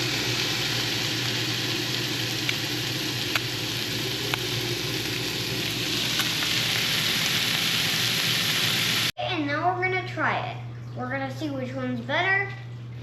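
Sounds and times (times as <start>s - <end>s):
fish sizzling in hot oil: 0.0s - 9.1s.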